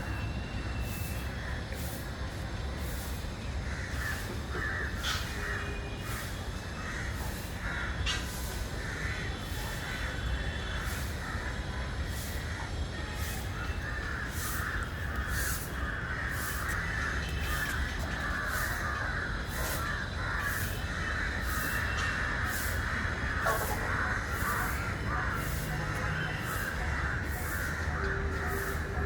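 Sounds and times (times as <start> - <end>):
birds chattering: 0.0 - 29.0
crow-like cawing: 3.7 - 12.6, 13.2 - 29.0.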